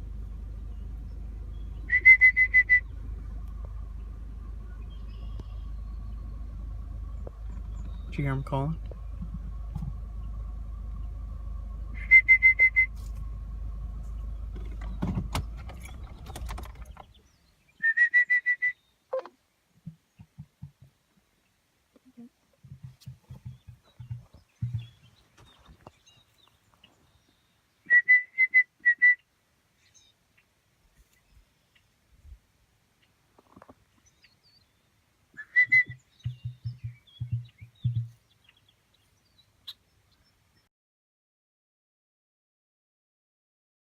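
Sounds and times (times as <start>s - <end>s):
faint low pulses: 0.0s - 17.0s
small birds chirping: 0.3s - 13.4s, 14.0s - 17.8s, 19.8s - 27.9s, 29.2s - 40.7s
rapid high whistled notes: 1.9s - 2.9s, 12.0s - 12.9s.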